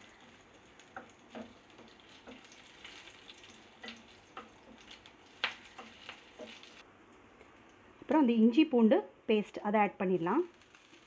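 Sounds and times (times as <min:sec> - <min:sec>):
seeds sizzling in hot oil: 0:00.0 - 0:06.9, 0:10.1 - 0:11.0
sharp clicks of frying: 0:00.0 - 0:08.2, 0:10.3 - 0:11.0.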